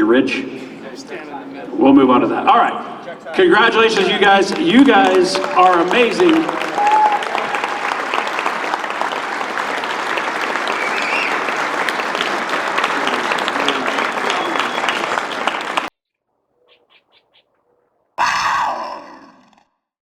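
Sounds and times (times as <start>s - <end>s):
crowd applauding: 2.8s - 15.9s.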